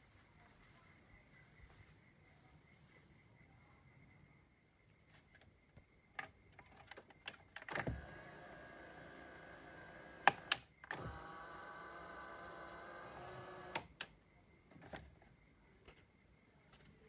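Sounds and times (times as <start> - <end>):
small electric motor running: 7.9 - 10.4, 11.0 - 13.8.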